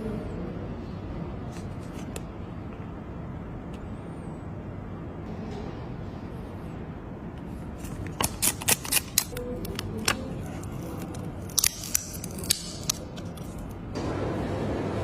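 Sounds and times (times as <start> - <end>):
clicks and snaps of packaging: 8.0 - 13.8.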